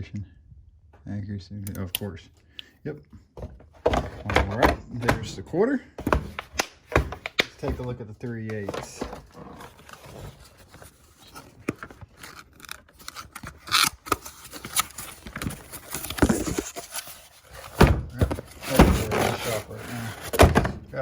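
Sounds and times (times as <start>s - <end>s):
tools and hard case clunking: 3.4s - 10.7s, 17.6s - 21.0s.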